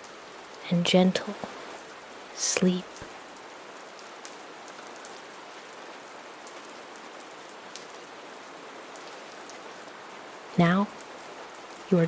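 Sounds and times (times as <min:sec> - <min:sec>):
raindrop ticks: 0:00.0 - 0:05.3, 0:06.4 - 0:08.1
steady rain falling: 0:00.0 - 0:12.0.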